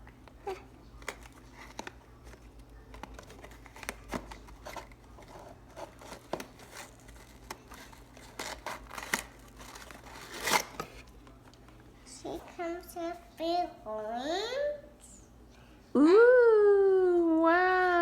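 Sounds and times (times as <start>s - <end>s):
packaging crinkling: 0.9s - 11.4s
packaging tearing: 2.9s - 11.0s.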